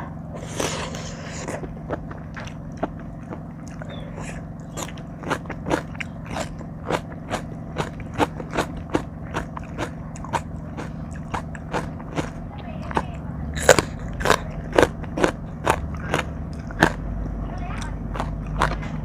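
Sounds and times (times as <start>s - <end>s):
low hum: 0.0s - 19.0s
wet crunchy chewing: 0.4s - 19.0s.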